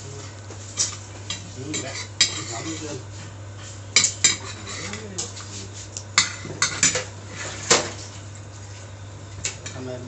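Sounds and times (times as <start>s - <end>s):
metal utensils clinking on dishes: 0.8s - 3.0s.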